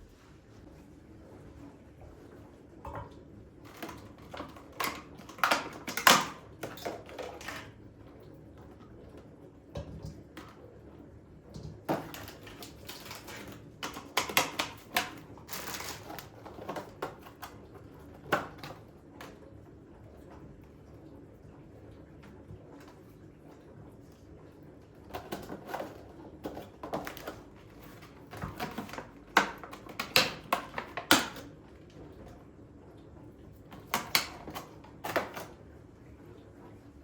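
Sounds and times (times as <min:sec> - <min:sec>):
household items clicking and tapping: 0:02.9 - 0:07.7, 0:11.6 - 0:19.4, 0:25.1 - 0:31.6, 0:33.7 - 0:35.6.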